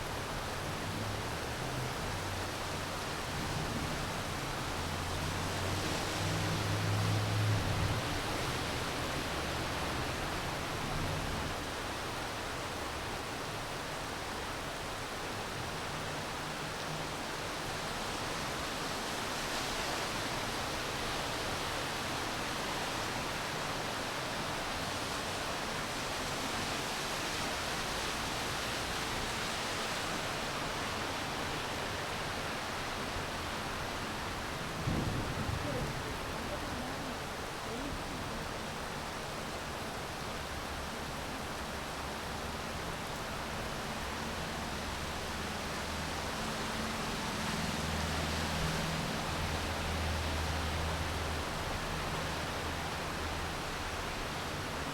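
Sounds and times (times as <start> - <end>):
steady rainfall: 0.0 - 54.9.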